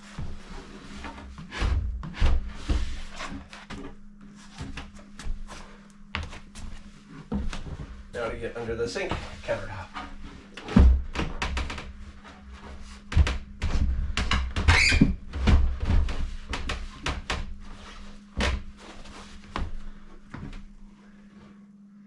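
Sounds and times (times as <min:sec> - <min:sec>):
wooden cabinet knocks and thumps: 0:10.7 - 0:12.0, 0:13.1 - 0:17.5.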